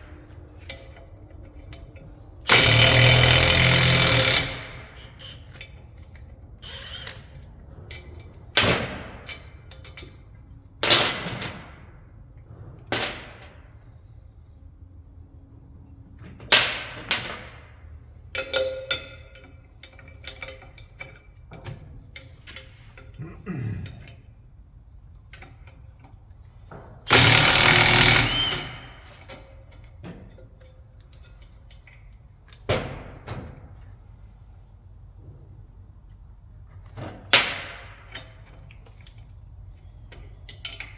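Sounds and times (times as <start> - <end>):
rattling power tool: 2.5 - 5.6, 27.1 - 29.1
wrench and socket clanking: 27.1 - 30.3.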